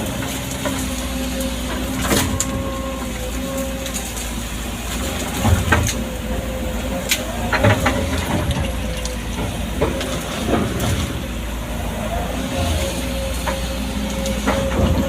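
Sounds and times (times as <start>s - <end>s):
excavator diesel engine running: 0.0s - 15.0s
machine knocks and clanks: 5.1s - 6.5s, 7.1s - 11.3s, 13.4s - 15.0s.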